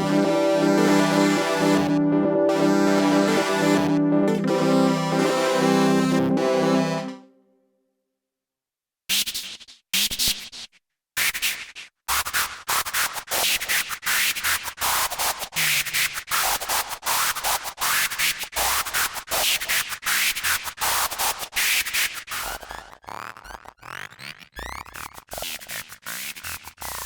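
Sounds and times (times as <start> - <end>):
synthesizer noise bursts: 0.0 - 7.2.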